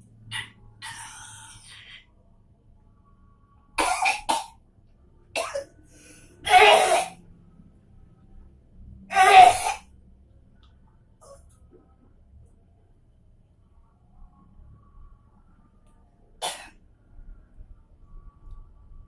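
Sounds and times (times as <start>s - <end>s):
person coughing harshly: 3.8s - 4.5s, 5.4s - 5.7s, 6.5s - 7.2s, 9.1s - 9.8s, 16.4s - 16.7s.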